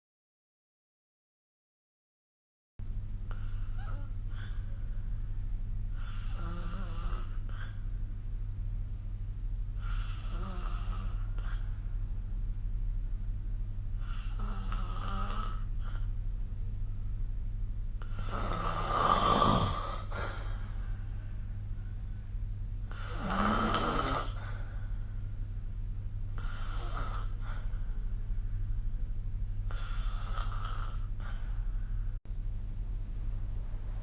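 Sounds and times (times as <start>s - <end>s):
steady low hum: 2.8s - 34.0s
person snoring: 3.3s - 4.8s, 5.9s - 7.8s, 9.8s - 11.8s, 14.0s - 16.1s, 18.0s - 20.8s, 22.9s - 24.9s, 26.4s - 27.9s, 29.6s - 31.8s.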